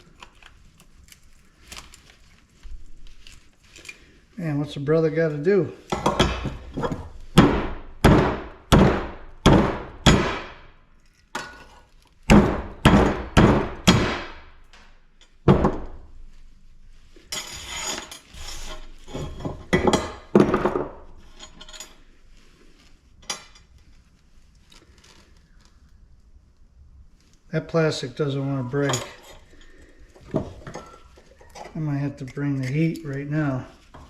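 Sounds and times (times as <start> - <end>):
rattling and scraping: 17.1 - 23.9, 28.8 - 34.0.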